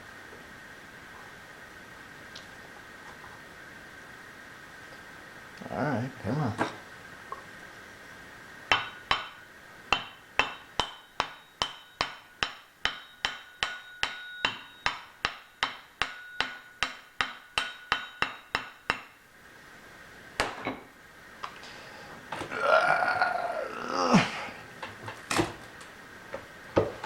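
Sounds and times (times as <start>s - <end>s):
hammer tapping on metal: 8.7s - 19.2s.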